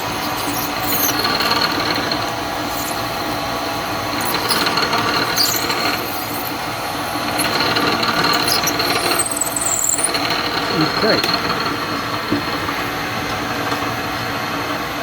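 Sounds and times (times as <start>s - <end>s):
drill squealing in plastic: 0.0s - 11.3s
milling machine whining: 0.0s - 14.6s.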